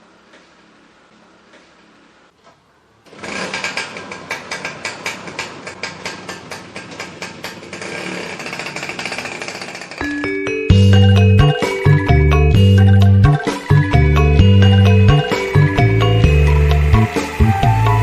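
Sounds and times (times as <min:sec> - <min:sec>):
rapid mechanical rattle: 0:03.1 - 0:10.2
music with mallet tones: 0:10.0 - 0:18.0.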